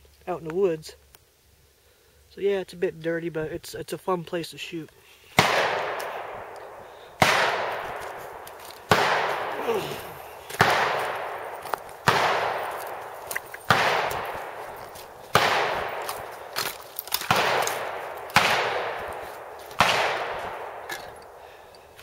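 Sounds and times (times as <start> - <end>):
gunshots with echo: 5.4 - 21.5.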